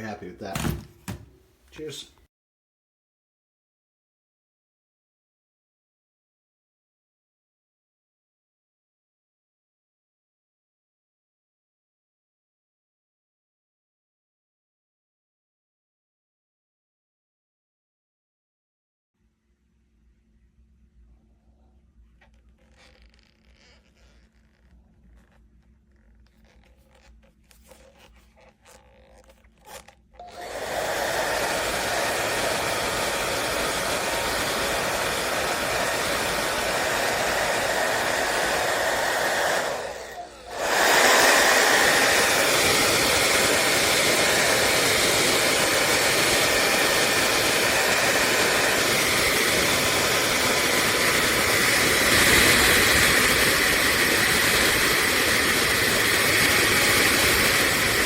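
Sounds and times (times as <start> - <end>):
hair dryer blowing air: 30.2 - 58.0.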